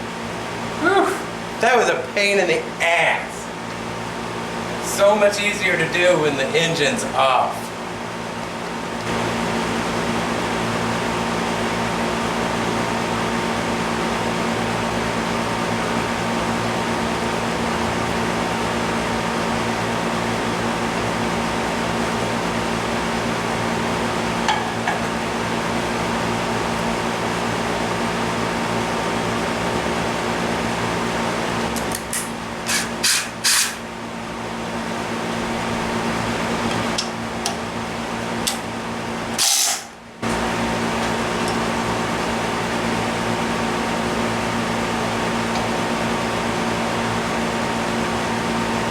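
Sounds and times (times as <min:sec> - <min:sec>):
air conditioner drone: 0:00.0 - 0:48.9.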